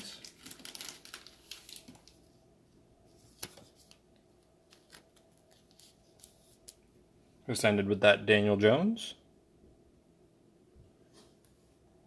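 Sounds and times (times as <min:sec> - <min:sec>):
cards rustling in plastic sleeves: 0:00.0 - 0:02.4, 0:03.1 - 0:06.9.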